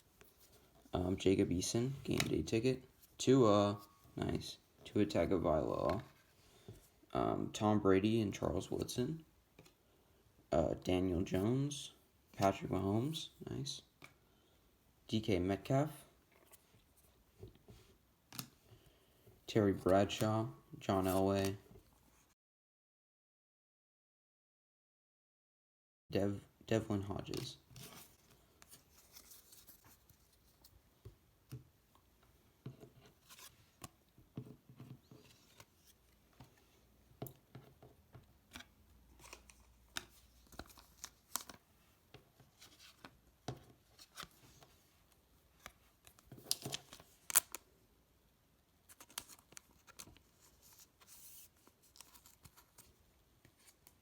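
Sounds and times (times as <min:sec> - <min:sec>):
cards and packaging rustling: 0:27.0 - 0:30.8, 0:32.9 - 0:37.4, 0:38.4 - 0:47.7, 0:48.8 - 0:54.0.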